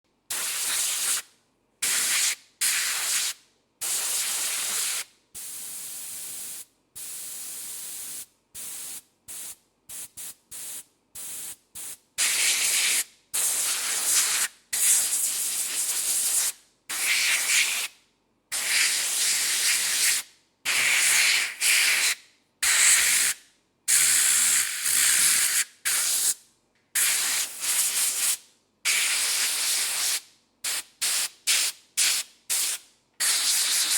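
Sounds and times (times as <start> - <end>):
compressed air hissing: 1.8 - 17.6, 32.0 - 33.9.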